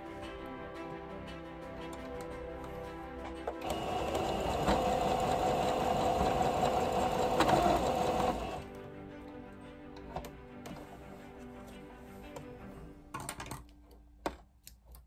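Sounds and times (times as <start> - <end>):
electric sewing machine stitching: 3.6 - 8.7.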